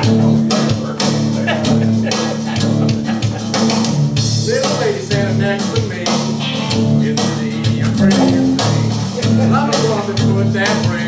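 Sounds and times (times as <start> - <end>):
country rock band music: 0.0 - 11.0
person singing: 6.3 - 9.8.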